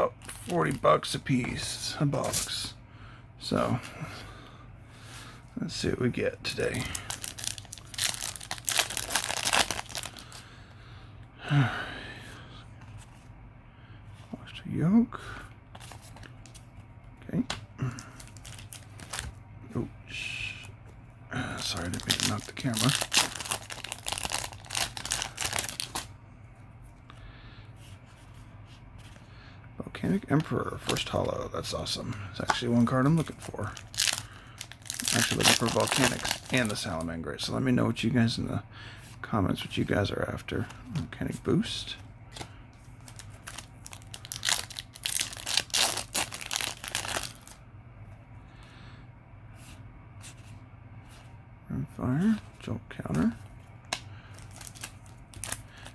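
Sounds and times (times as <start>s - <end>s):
foil wrapper tearing and crinkling: 6.7s - 10.3s, 18.2s - 19.2s, 21.6s - 26.1s, 33.7s - 36.8s, 43.0s - 47.6s, 54.4s - 55.9s.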